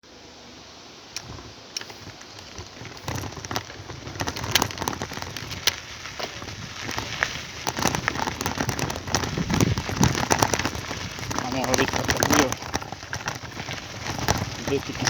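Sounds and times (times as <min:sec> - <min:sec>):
steady hiss: 0:00.0 - 0:15.0
pattering and crackling clicks: 0:01.1 - 0:15.0.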